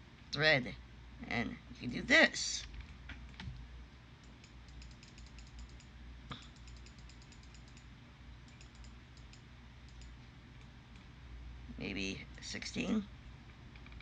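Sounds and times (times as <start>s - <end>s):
low steady hum: 0.0s - 14.0s
computer keyboard and mouse clicks: 4.2s - 7.9s, 8.5s - 11.1s, 13.7s - 14.0s.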